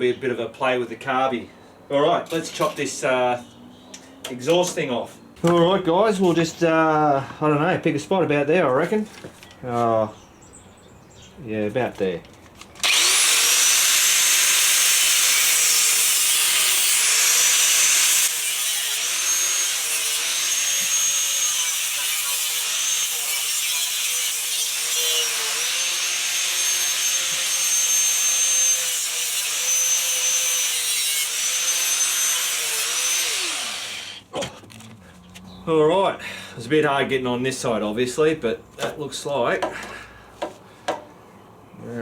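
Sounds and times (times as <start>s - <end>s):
power tool cutting metal pipe: 12.8s - 34.2s.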